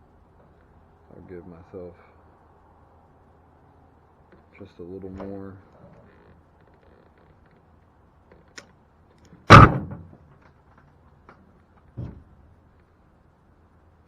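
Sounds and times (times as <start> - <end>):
loud slam: 9.5 - 10.1.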